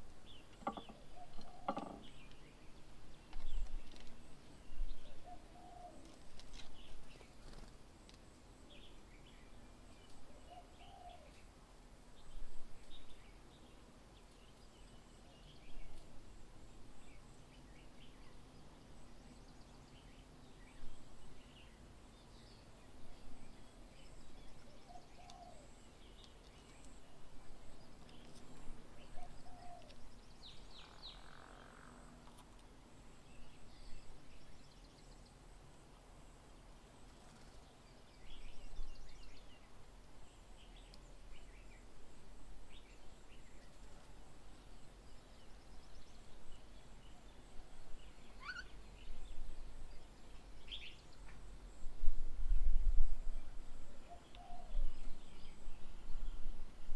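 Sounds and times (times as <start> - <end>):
faint high-pitched hum: 0.0 - 56.9
birds chirping and trilling: 0.3 - 4.1, 45.4 - 51.8.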